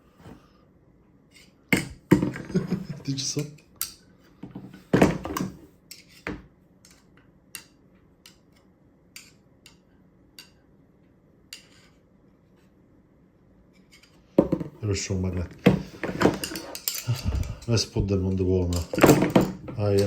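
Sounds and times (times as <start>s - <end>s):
screwdriver shafts clinking: 16.3s - 20.0s.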